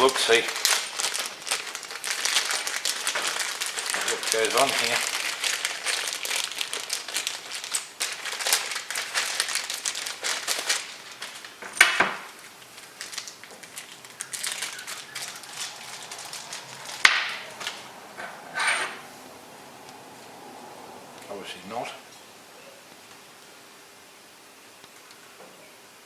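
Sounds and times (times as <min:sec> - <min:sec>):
plastic bag crinkling: 0:00.0 - 0:21.7.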